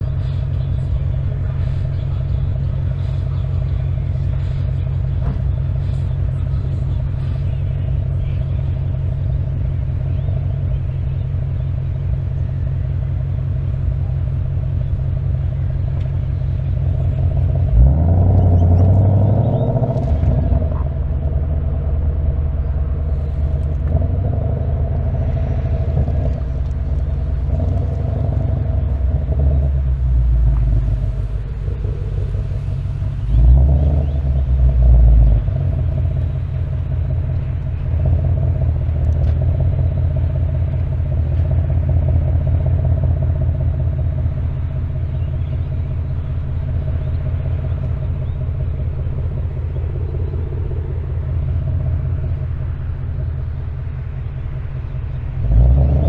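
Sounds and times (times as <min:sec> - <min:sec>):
car engine rumbling: 0:00.0 - 0:56.0.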